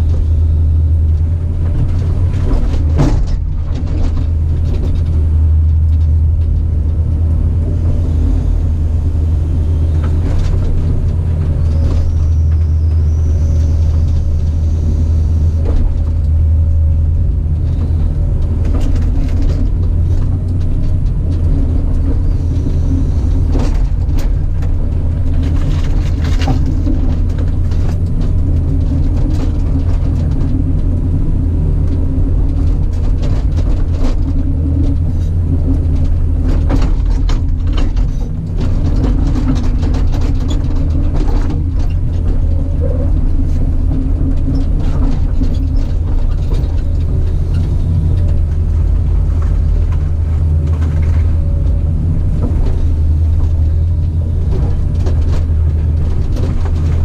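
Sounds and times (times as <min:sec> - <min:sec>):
knocks and clanks: 0:00.0 - 0:08.8, 0:31.9 - 0:57.0
diesel engine running loudly: 0:00.0 - 0:57.0.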